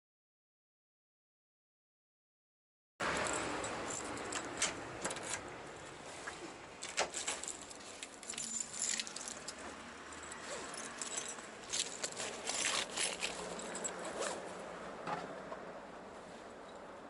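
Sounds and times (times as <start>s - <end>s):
light metallic jingling: 3.0s - 5.4s, 6.8s - 14.4s
rustling handling noise: 6.0s - 14.6s.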